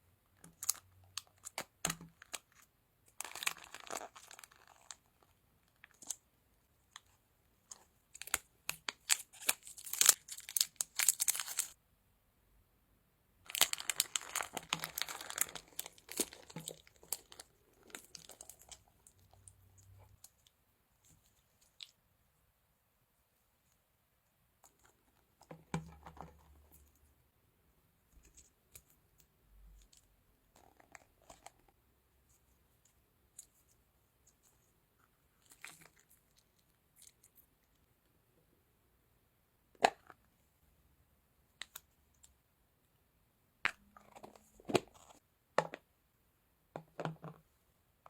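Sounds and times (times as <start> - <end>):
soft squishing: 0.3 - 11.8, 13.5 - 22.3, 28.0 - 38.2.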